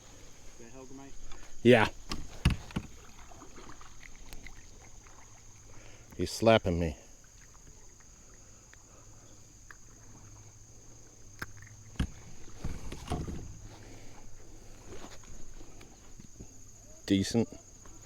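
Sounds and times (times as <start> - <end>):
clicks and knocks in kayak: 1.2 - 5.2, 11.3 - 16.6.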